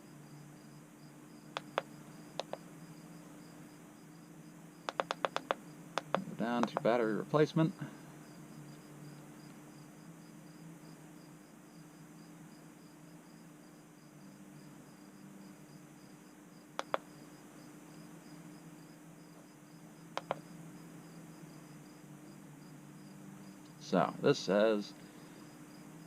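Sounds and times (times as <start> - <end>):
crickets chirping: 0.0 - 26.0
button presses clicking: 1.6 - 2.6, 4.9 - 6.8, 16.8 - 17.0, 20.2 - 20.4.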